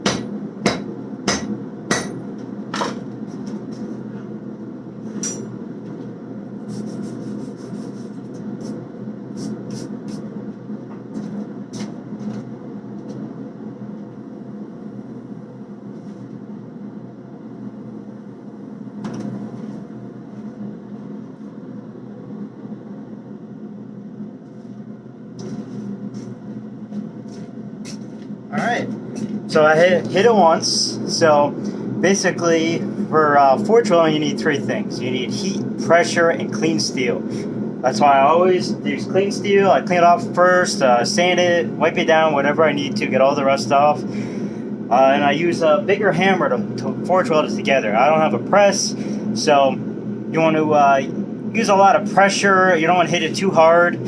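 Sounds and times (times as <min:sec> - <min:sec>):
forge rushing noise: 0:28.5 - 0:54.0.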